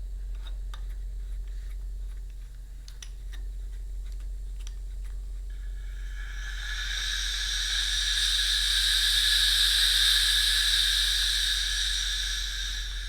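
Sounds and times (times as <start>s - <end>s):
compressed air hissing: 5.6s - 13.0s.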